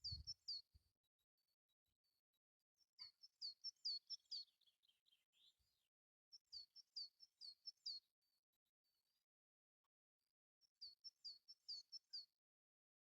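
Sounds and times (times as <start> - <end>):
bird singing high chirps: 0.0 - 0.8, 3.0 - 9.2, 10.7 - 12.4.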